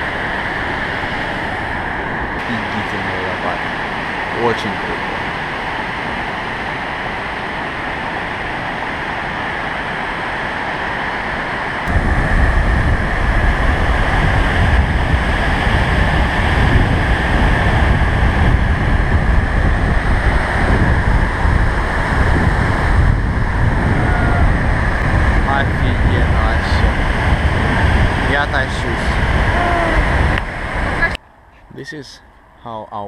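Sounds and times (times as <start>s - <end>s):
heavy deep rumble: 0.0s - 7.8s, 11.7s - 32.8s
waterfall rushing: 2.4s - 6.3s.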